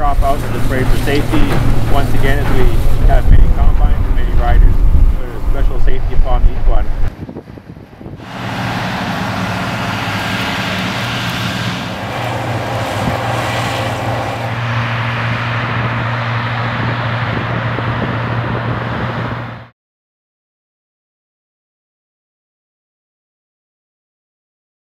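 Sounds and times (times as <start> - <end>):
broad whirring noise: 0.0 - 19.7
combine harvester engine hum: 0.0 - 19.7.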